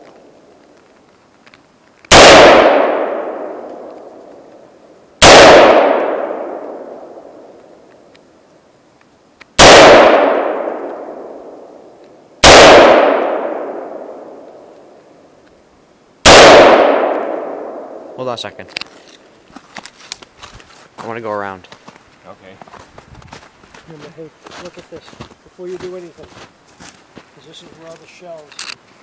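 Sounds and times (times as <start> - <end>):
rifle shots echoing: 2.1 - 4.2, 5.2 - 7.5, 9.6 - 11.6, 12.4 - 14.6, 16.2 - 18.2.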